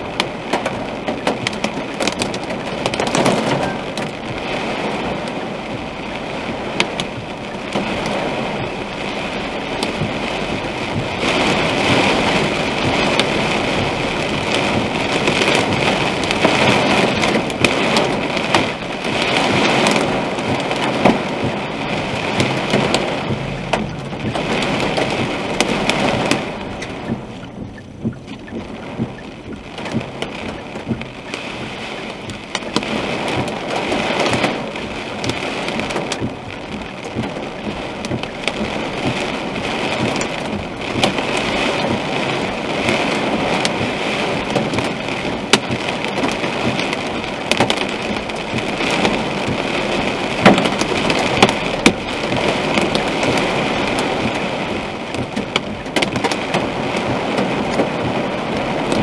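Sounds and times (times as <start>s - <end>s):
hail and rain hitting a car: 0.0s - 59.0s.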